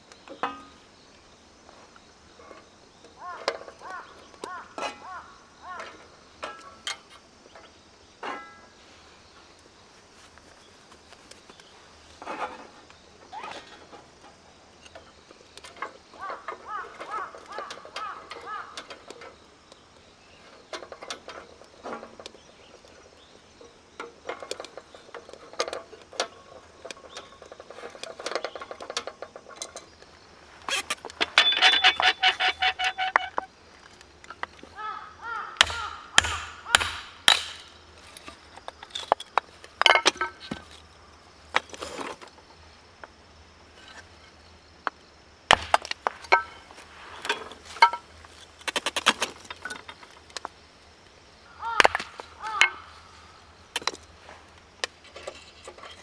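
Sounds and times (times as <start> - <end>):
firewood knocking and clinking: 24.0 - 34.7, 35.5 - 42.4, 44.8 - 50.6, 51.6 - 54.1.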